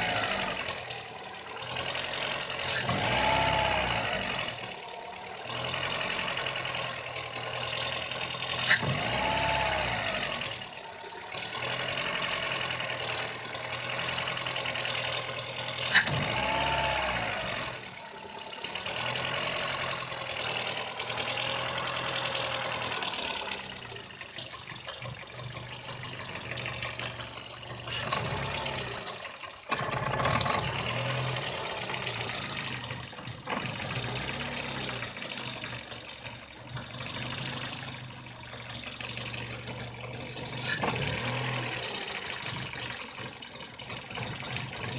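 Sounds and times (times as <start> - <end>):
car engine idling roughly: 0.0 - 44.9.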